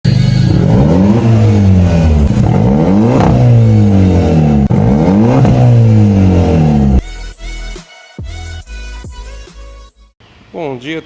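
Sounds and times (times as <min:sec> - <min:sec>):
car engine revving: 0:00.1 - 0:07.0.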